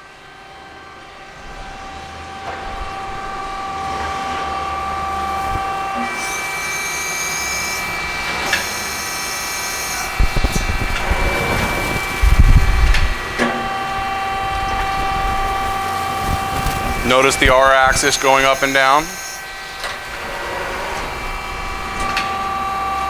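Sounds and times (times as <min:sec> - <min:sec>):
high whine: 0:00.0 - 0:23.0
machine hum: 0:00.0 - 0:23.0.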